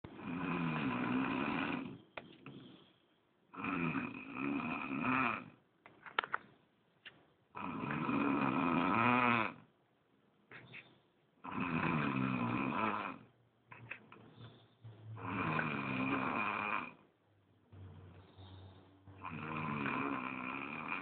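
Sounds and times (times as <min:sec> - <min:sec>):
man snoring heavily: 0:00.1 - 0:02.0, 0:03.5 - 0:05.6, 0:07.6 - 0:09.7, 0:11.4 - 0:13.3, 0:15.2 - 0:17.0, 0:19.2 - 0:21.0
quiet breaths: 0:10.4 - 0:17.0, 0:18.0 - 0:21.0.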